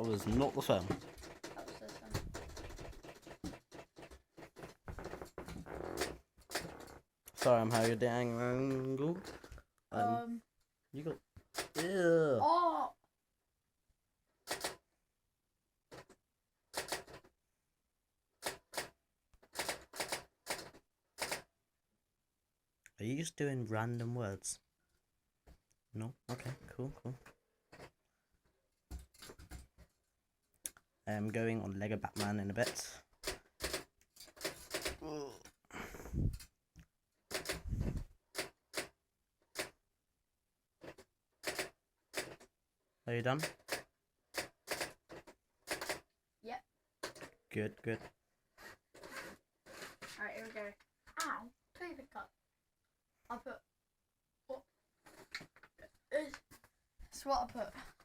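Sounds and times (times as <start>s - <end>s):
manual typewriter keys striking: 0.0s - 4.8s, 6.0s - 8.0s, 11.5s - 12.0s, 14.5s - 14.8s, 16.7s - 17.3s, 18.4s - 21.5s, 32.2s - 35.0s, 37.3s - 37.7s, 41.4s - 42.4s, 43.4s - 46.1s
typewriter keys clacking: 19.5s - 21.4s, 41.4s - 42.4s, 44.4s - 45.0s.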